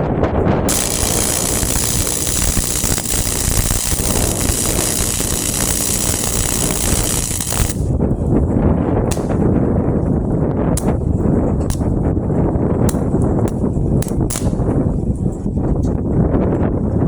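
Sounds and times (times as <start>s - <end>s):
welding arc crackling and hissing: 0.7s - 7.9s, 9.1s - 9.4s.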